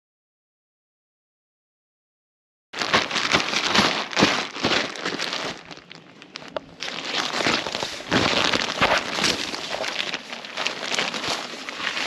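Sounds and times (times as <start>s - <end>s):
fabric rustling and crinkling: 2.8s - 12.0s.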